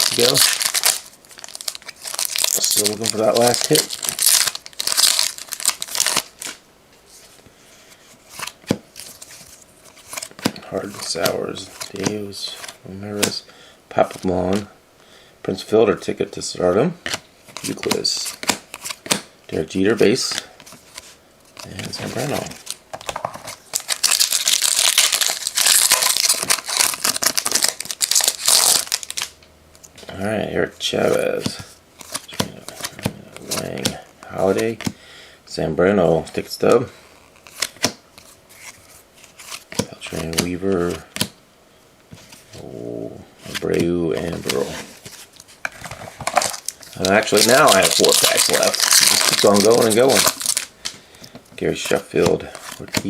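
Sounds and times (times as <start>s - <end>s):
card pack wrapper crinkling: 0.0s - 6.6s, 20.2s - 29.4s, 43.5s - 51.0s.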